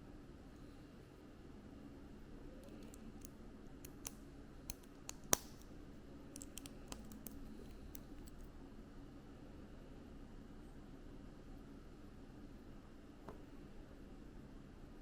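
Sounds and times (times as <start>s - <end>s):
plastic bricks clicking: 2.6s - 5.7s, 6.4s - 8.4s.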